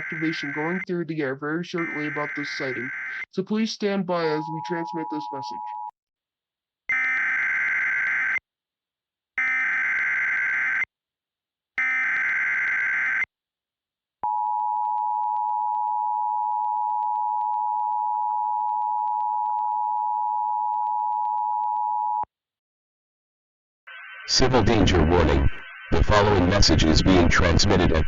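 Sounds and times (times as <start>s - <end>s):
data burst tones: 0.0s - 1.0s, 1.7s - 3.6s, 4.2s - 5.8s, 23.9s - 28.0s
two-tone attention signal: 4.3s - 5.9s.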